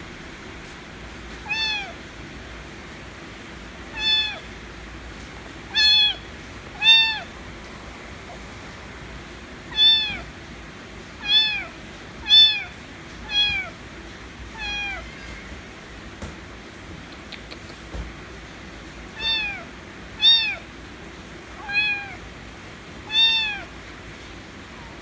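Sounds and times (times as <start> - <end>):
kitten meowing: 1.4 - 2.0, 3.9 - 4.5, 5.7 - 7.3, 9.7 - 10.3, 11.2 - 13.8, 14.5 - 15.6, 19.2 - 20.6, 21.6 - 22.2, 23.0 - 23.8.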